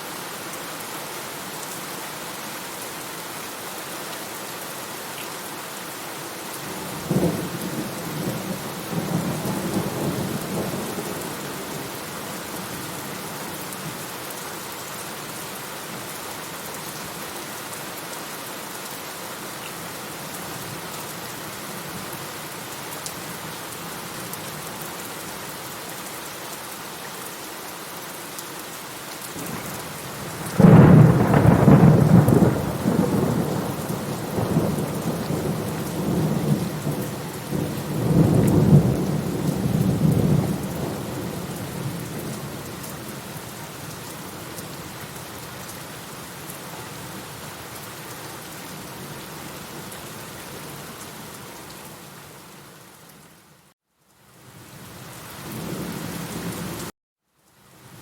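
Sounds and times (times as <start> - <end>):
steady rain falling: 0.0 - 58.0
thunder clap and rumble: 30.4 - 41.1.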